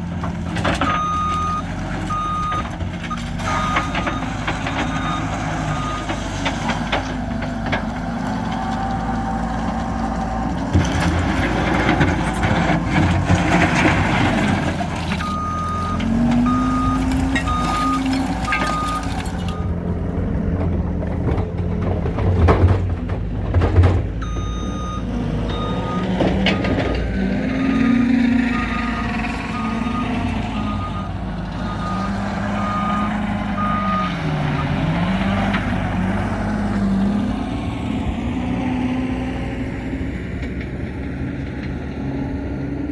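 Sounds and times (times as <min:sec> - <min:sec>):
diesel engine running: 0:00.0 - 0:42.9
debris clanking and crashing: 0:10.6 - 0:24.7
backup alarm beeping: 0:15.2 - 0:19.8.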